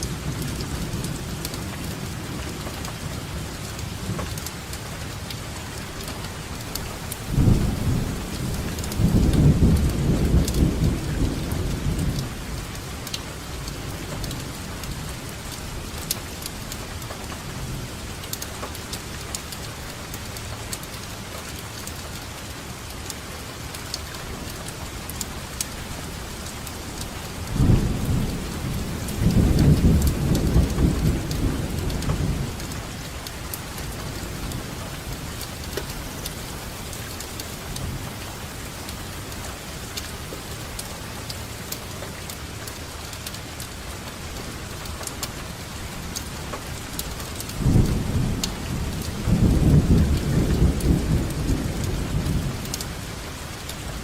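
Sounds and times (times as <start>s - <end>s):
steady rainfall: 0.0s - 54.0s
low thunder rumbling: 7.2s - 15.1s, 24.2s - 39.3s, 46.8s - 54.0s.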